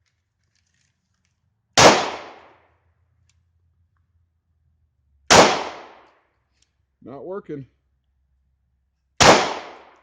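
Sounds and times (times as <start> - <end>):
pistol shots: 1.8 - 2.6, 5.3 - 6.1, 9.2 - 10.0.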